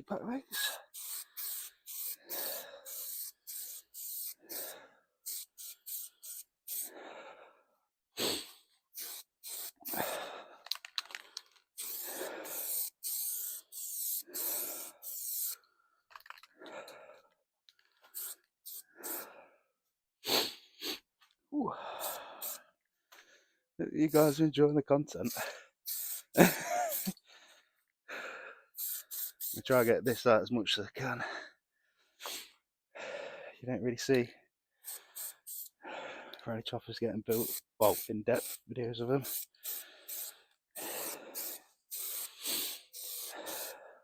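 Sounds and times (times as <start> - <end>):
aerosol spray can spraying: 0.5 - 6.9, 8.2 - 10.1, 11.8 - 15.6, 18.1 - 19.3, 22.0 - 22.6, 25.2 - 27.2, 28.8 - 30.2, 34.8 - 35.8, 37.3 - 43.8.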